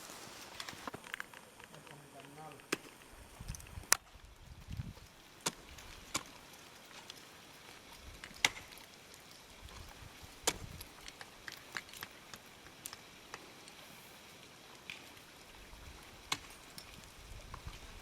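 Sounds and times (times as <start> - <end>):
ice tools striking ice: 5.4 - 7.1, 8.0 - 8.9, 10.4 - 13.0, 16.3 - 17.0.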